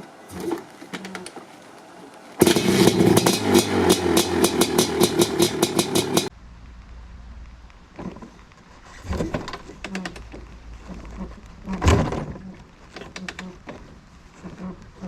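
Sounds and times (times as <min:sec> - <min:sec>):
knocks and clatter: 0:02.4 - 0:06.3, 0:11.7 - 0:14.0.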